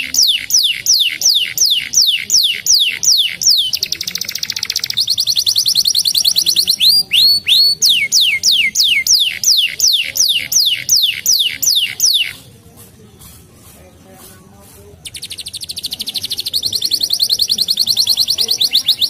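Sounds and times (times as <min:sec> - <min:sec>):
canary singing: 0:00.0 - 0:12.6, 0:13.2 - 0:19.0.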